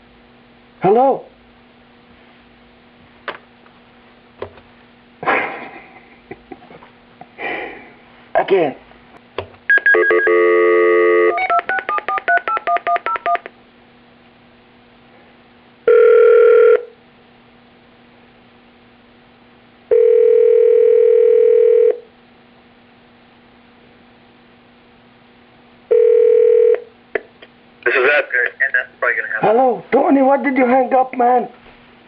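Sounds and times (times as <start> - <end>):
telephone dial tone: 9.7 - 13.5, 15.9 - 16.9, 19.9 - 22.0, 25.9 - 26.9
telephone ringing tone: 9.7 - 13.5, 15.9 - 16.9, 19.9 - 22.1, 25.9 - 26.9.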